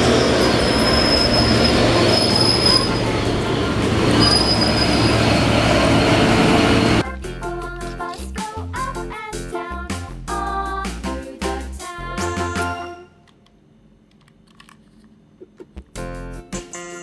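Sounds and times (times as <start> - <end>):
train rumbling on rails: 0.0 - 7.0
wheel squeals: 0.0 - 7.0.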